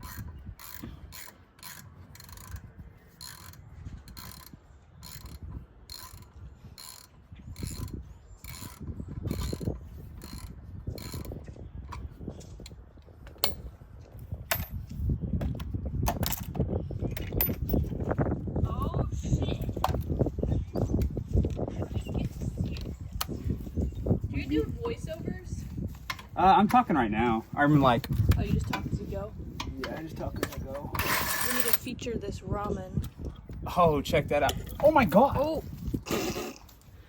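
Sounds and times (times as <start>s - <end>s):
hand ratchet clicking: 0.0s - 11.4s.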